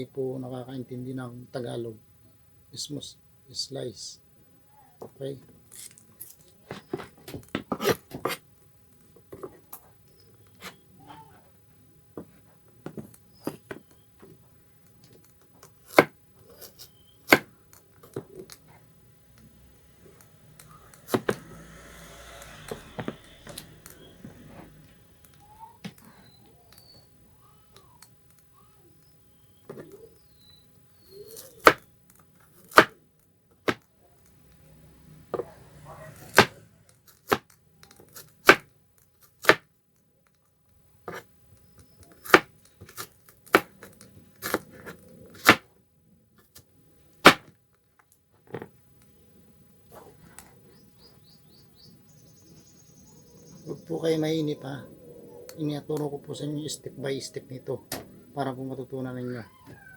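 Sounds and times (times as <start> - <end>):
knife slicing garlic: 15.8 - 17.5, 31.0 - 31.8, 32.6 - 33.0, 36.2 - 37.5, 38.1 - 38.7, 39.4 - 39.6, 42.1 - 43.8, 44.4 - 45.6.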